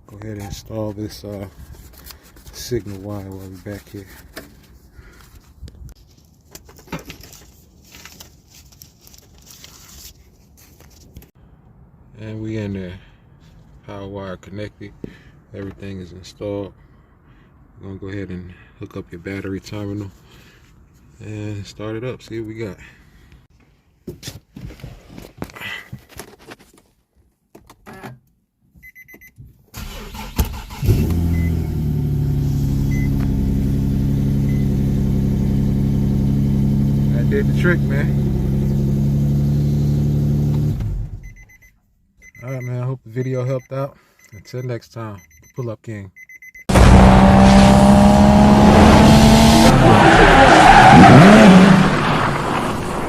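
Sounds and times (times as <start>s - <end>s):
electronic car beeps: 28.8s - 29.4s, 31.3s - 31.7s, 32.8s - 33.3s, 34.4s - 34.8s, 41.2s - 46.8s
racing car engine: 46.7s - 53.0s
tyre squeal: 49.7s - 52.4s.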